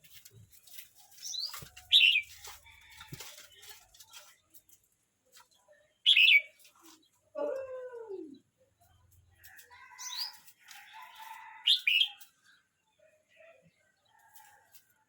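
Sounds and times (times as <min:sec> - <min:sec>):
bird singing: 0:05.6 - 0:09.0.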